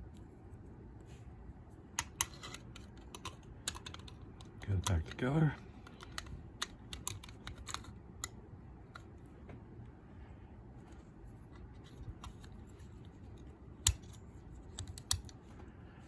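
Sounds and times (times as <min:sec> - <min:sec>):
metallic clicks of lock parts: 0:02.0 - 0:09.1, 0:13.3 - 0:15.4.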